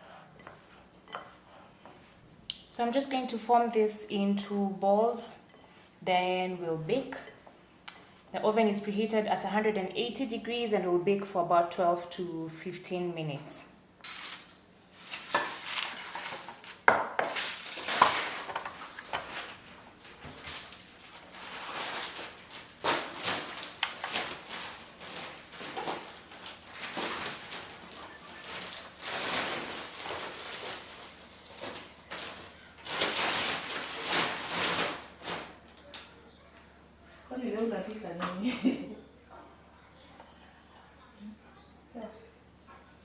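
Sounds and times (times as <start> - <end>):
rustling: 14.0 - 35.6.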